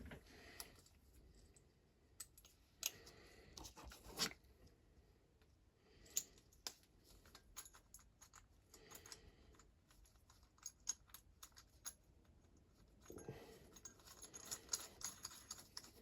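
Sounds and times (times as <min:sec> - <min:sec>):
small parts clicking and tapping: 0:06.1 - 0:16.0.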